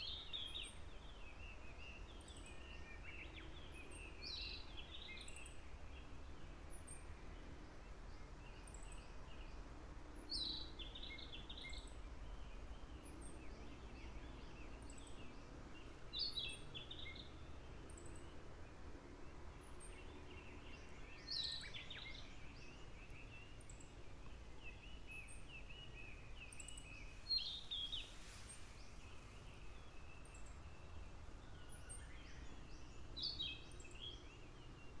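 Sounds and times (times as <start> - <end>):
songbird singing: 0.0 - 35.0
birds twittering: 10.2 - 35.0.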